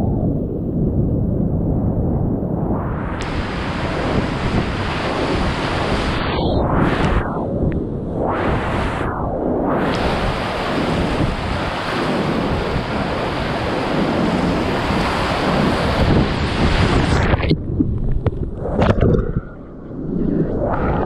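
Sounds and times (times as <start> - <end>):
low rumbling: 0.0 - 10.0, 16.8 - 21.0
wind buffeting microphone: 0.0 - 21.0.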